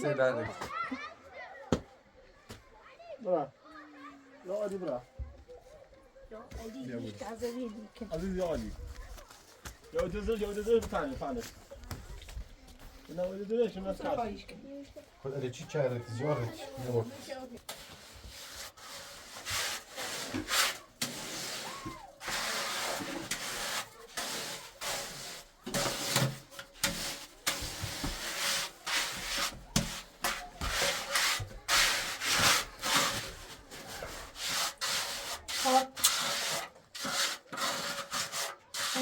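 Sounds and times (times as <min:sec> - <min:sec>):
hand tool scraping cement: 0:16.4 - 0:39.0.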